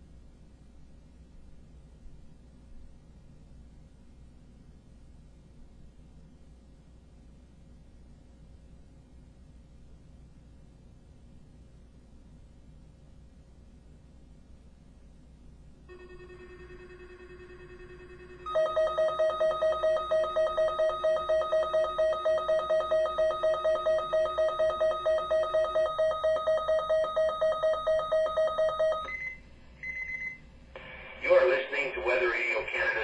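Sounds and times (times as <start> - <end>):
faint steady tone: 0.0 - 31.0
rapidly pulsing electronic beep: 15.9 - 30.4.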